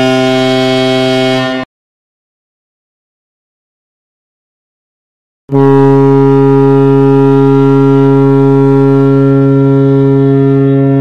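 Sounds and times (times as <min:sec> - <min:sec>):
goal horn blast: 0:00.0 - 0:01.7, 0:05.5 - 0:11.0.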